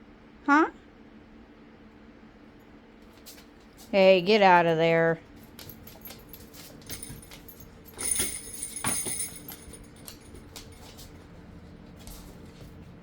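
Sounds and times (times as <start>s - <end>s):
dog door bells jangling: 5.4s - 11.0s.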